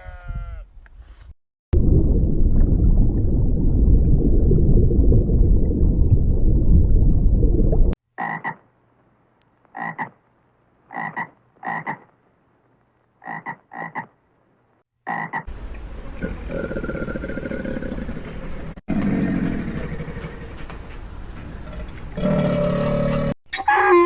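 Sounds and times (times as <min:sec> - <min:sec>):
loud low noise: 0:01.8 - 0:07.9
frog croaking: 0:08.2 - 0:08.6, 0:09.7 - 0:10.2, 0:10.9 - 0:12.1, 0:13.2 - 0:14.2, 0:15.0 - 0:15.5.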